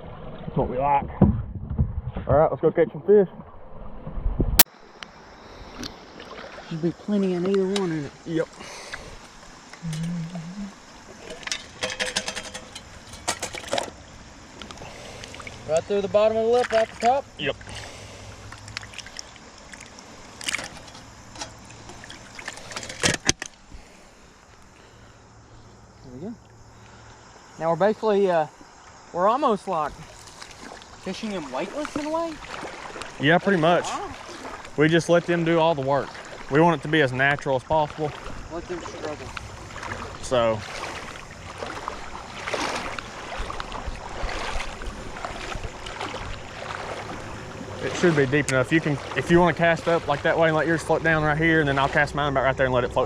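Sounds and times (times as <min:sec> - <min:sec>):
wind rumbling on microphone: 0:00.0 - 0:02.6, 0:03.3 - 0:04.6
creek water running: 0:04.6 - 0:53.0.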